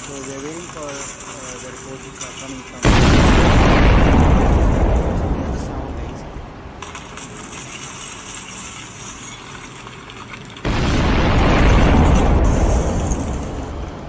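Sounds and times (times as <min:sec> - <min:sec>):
sonic boom with rolling rumble: 0:02.8 - 0:06.8, 0:10.7 - 0:14.0.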